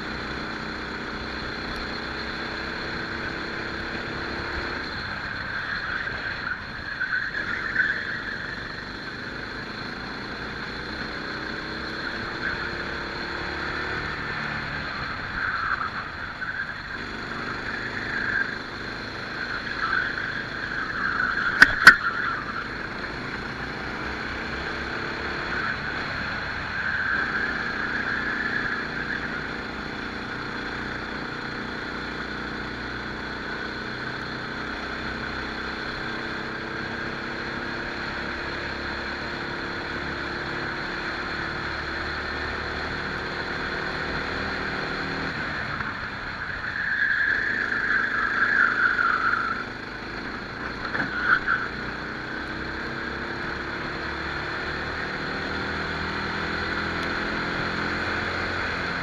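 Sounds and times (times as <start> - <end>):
kart engine accelerating: 0.0 - 59.0
high squeals: 1.5 - 32.4, 43.4 - 55.2.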